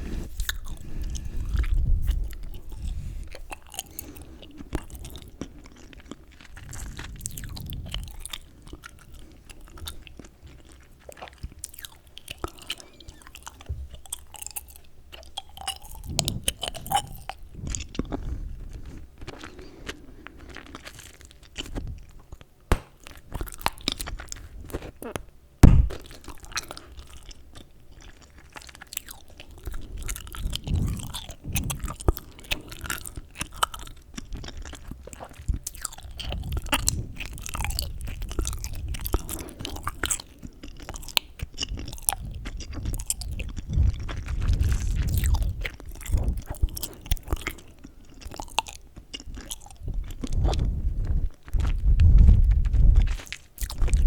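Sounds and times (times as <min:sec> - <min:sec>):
gum chewing mouth clicks: 0:00.1 - 0:54.0
loud thump: 0:25.6 - 0:26.1.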